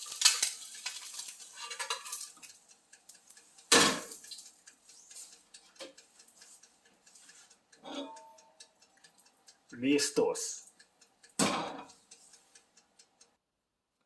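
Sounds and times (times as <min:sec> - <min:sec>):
utensils scraping a frying pan: 0:00.1 - 0:02.5, 0:07.2 - 0:08.3.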